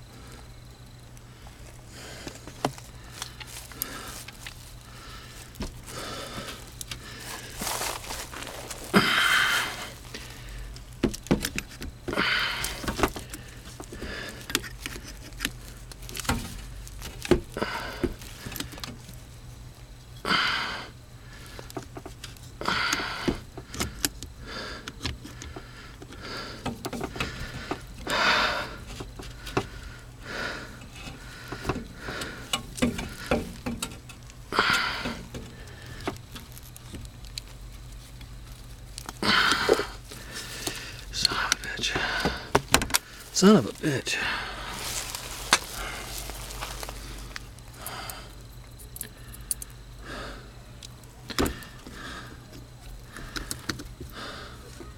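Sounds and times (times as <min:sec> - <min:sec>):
low steady hum: 0:00.0 - 0:54.9
handling scrapes and rustles: 0:01.5 - 0:10.4, 0:44.6 - 0:47.8
sharp clicks and knocks: 0:30.8 - 0:37.5.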